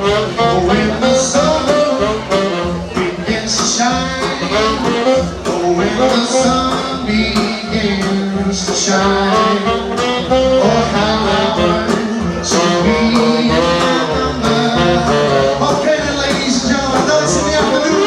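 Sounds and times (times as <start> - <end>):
jazz band playing: 0.0 - 18.0.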